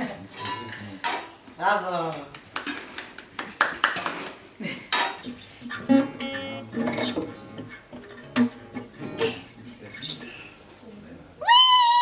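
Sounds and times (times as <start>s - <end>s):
dishes and cutlery clinking: 0.3s - 1.4s, 4.0s - 5.4s
acoustic guitar music: 5.1s - 10.6s.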